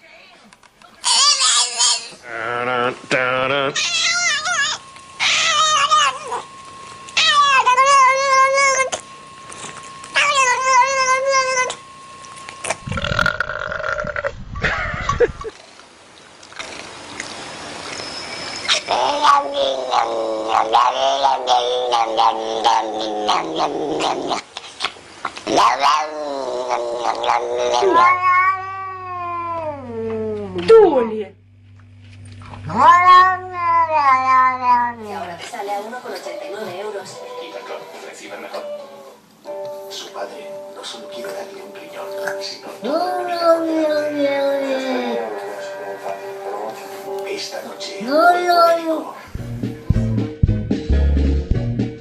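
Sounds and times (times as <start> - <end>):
low hum: 2.2 - 15.5, 26.3 - 35.5
cat yowling: 3.7 - 6.5, 7.2 - 9.0, 10.2 - 11.8, 18.7 - 24.1, 25.6 - 30.4, 32.6 - 35.1, 38.5 - 39.2, 42.8 - 45.4, 48.0 - 49.2.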